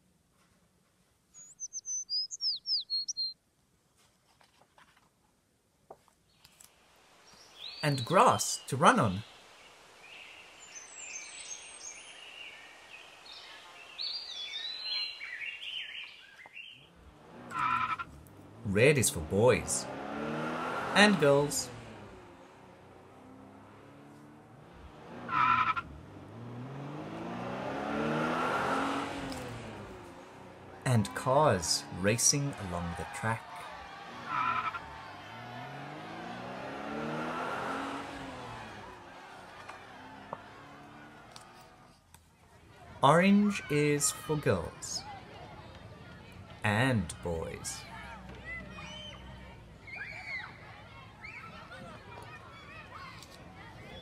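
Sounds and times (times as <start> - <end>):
bird chirping: 1.3 - 3.4, 7.2 - 16.9
race cars passing: 16.7 - 54.0
engine revving: 16.9 - 42.0
tyre squeal: 17.5 - 18.2, 34.1 - 35.6.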